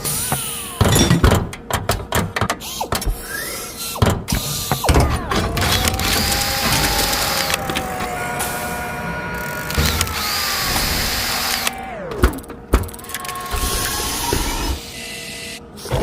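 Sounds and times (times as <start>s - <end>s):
servo whines: 2.6s - 16.0s
steady motor whine: 4.8s - 12.4s.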